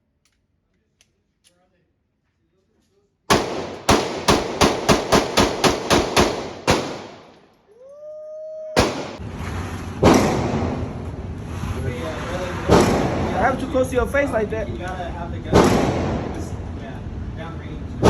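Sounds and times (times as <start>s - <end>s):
pistol shots: 3.3s - 7.4s, 8.8s - 9.2s, 10.0s - 10.9s, 12.7s - 13.6s, 15.5s - 16.4s
loud bang: 10.0s - 11.2s, 12.4s - 13.9s, 15.4s - 16.7s.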